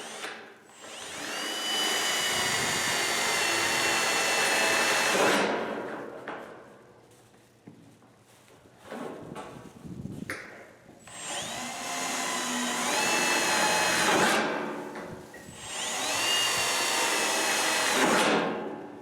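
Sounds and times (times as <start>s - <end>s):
electric drill boring sheet metal: 0.0s - 5.5s, 11.1s - 14.8s, 15.4s - 18.4s.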